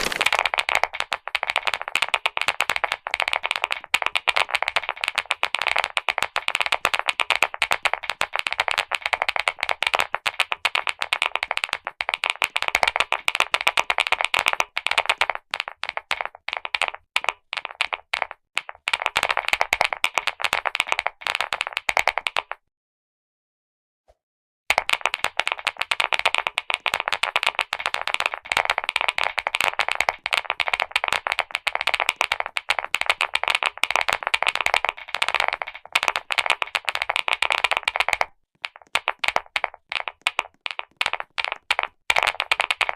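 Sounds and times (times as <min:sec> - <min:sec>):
mechanical keyboard clicking: 0:00.0 - 0:00.4.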